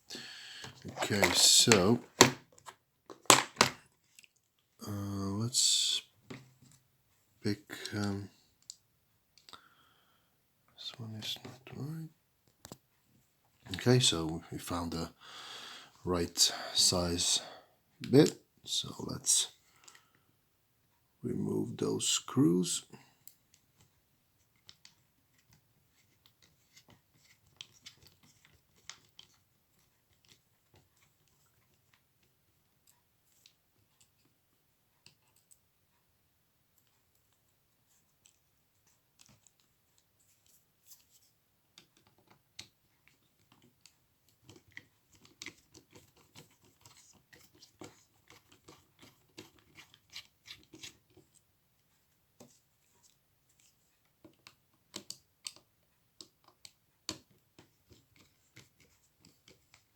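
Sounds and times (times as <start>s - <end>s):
small screwdriver clicking and scratching: 44.4s - 51.4s.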